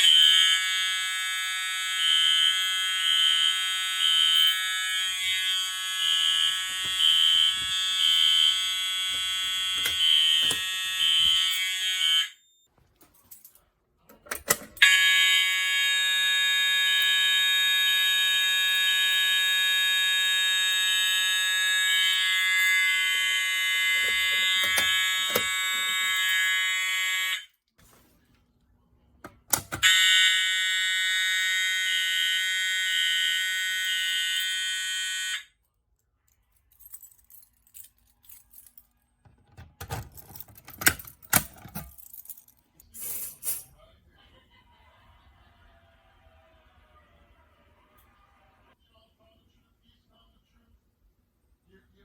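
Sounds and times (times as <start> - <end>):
fire alarm horn with pulsing beep: 0.0 - 12.7, 14.8 - 27.6, 29.6 - 35.6.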